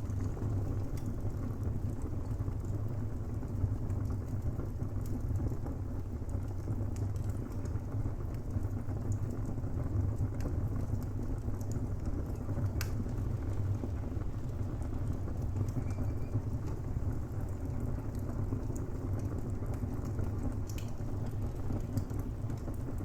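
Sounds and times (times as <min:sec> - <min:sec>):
fire low rumble: 0:00.0 - 0:23.0
wood crackling and snapping: 0:12.7 - 0:13.2, 0:20.6 - 0:21.0.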